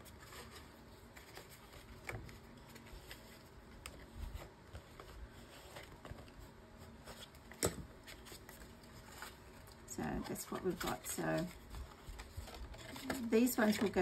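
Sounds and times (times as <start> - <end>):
soft rubbing of card: 0.0 - 14.0.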